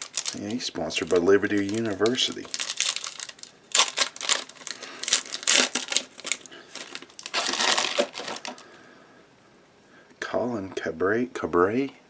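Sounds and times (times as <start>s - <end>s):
trading cards rustling: 0.0s - 8.7s.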